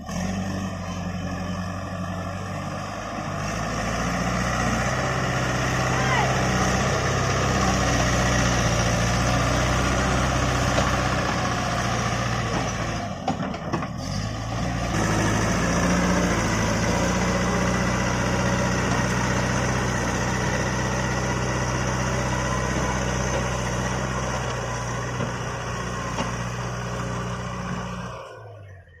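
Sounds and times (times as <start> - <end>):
diesel engine running: 0.0 - 29.0.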